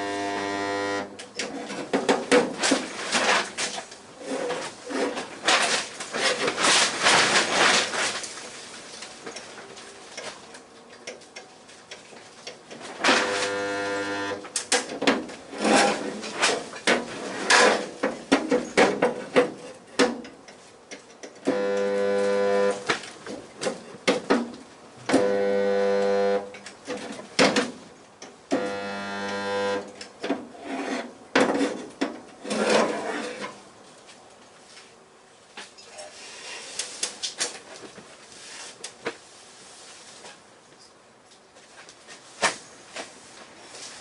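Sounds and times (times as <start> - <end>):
spot welder buzzing: 0.0 - 1.2, 13.0 - 14.5, 21.4 - 22.9, 25.1 - 26.6, 28.5 - 30.0
clattering and scraping: 1.3 - 10.4, 14.5 - 20.3, 30.2 - 33.6.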